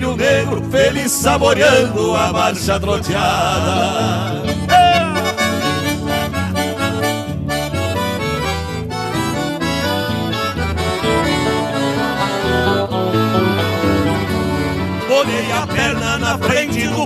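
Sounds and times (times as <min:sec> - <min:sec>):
people singing: 0:00.0 - 0:06.2, 0:15.1 - 0:17.0
accordion playing folk melody: 0:00.0 - 0:17.0.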